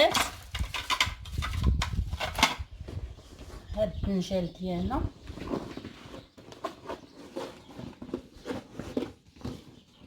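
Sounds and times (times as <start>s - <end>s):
household items clicking and knocking: 0.0s - 2.7s.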